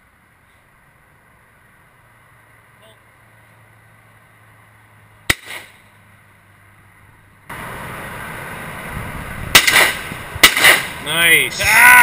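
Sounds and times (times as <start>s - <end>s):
shotgun shot with echo: 5.3s - 5.8s, 9.5s - 11.0s.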